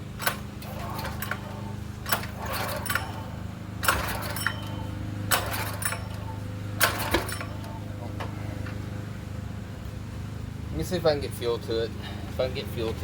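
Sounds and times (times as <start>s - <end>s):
steady low hum: 0.0s - 13.0s
metallic clicks and clanks of tools: 0.2s - 3.2s, 3.8s - 6.2s.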